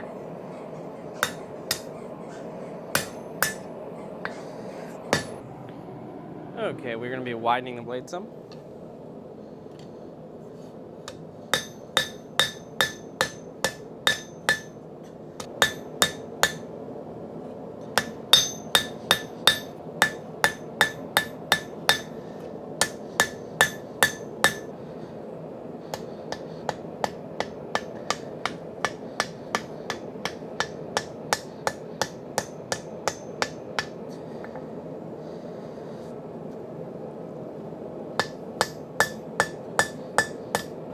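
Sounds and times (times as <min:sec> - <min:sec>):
low rushing noise: 0:00.0 - 0:10.4
hammer striking blade on anvil: 0:01.2 - 0:02.0, 0:02.9 - 0:04.4, 0:05.1 - 0:05.4, 0:11.1 - 0:14.8, 0:15.4 - 0:16.7, 0:17.8 - 0:22.2, 0:22.8 - 0:24.8, 0:25.9 - 0:34.6, 0:38.2 - 0:40.8.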